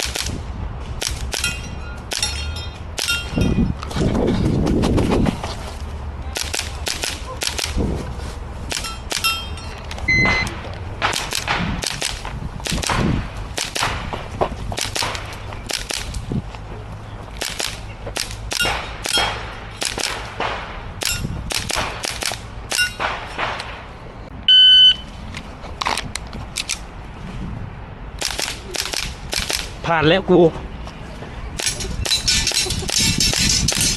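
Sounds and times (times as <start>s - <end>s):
airsoft gun shots: 10.1s - 14.2s, 14.8s - 16.1s.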